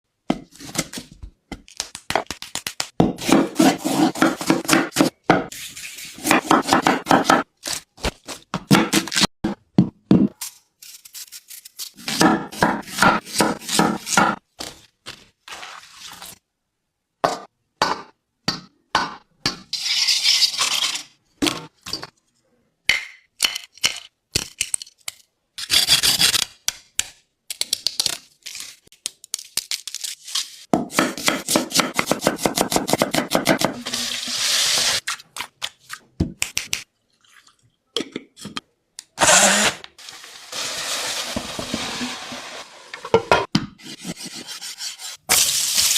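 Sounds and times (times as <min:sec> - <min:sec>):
knife chopping: 0:03.0 - 0:05.5, 0:06.2 - 0:09.2, 0:12.0 - 0:14.4, 0:30.8 - 0:33.8
scraping and stirring in a pan: 0:19.7 - 0:21.2, 0:40.0 - 0:45.9.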